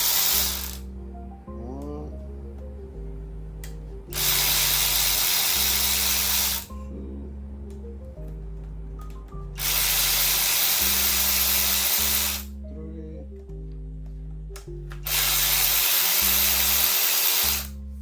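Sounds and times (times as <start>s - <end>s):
cordless power tool motor: 0.0s - 0.8s, 4.1s - 6.8s, 9.6s - 12.5s, 15.0s - 17.8s
background music: 0.0s - 18.0s.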